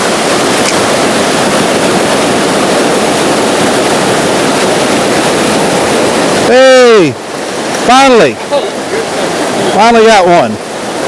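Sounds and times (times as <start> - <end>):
stream rushing: 0.0 - 11.0.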